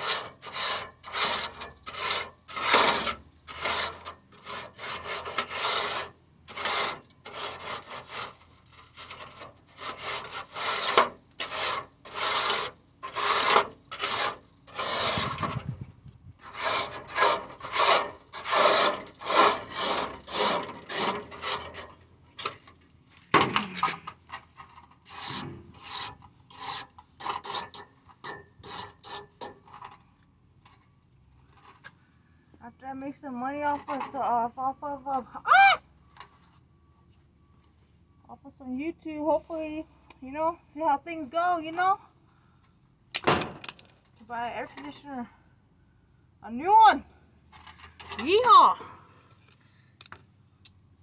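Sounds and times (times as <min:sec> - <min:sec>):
rasping scraping strokes: 0:00.0 - 0:15.8, 0:16.4 - 0:22.0, 0:25.0 - 0:29.9.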